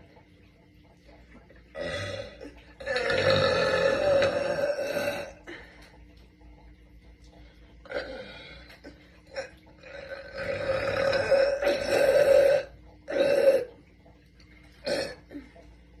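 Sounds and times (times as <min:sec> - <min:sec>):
woman burping: 0:01.8 - 0:05.6, 0:07.8 - 0:08.4, 0:09.3 - 0:13.7, 0:14.8 - 0:15.5.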